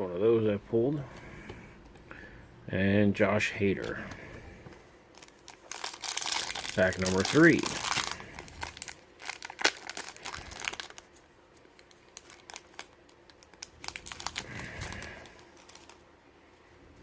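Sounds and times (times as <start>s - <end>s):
cards rustling and clicking: 3.8s - 16.0s
plastic wrapper crinkling and tearing: 5.1s - 16.0s.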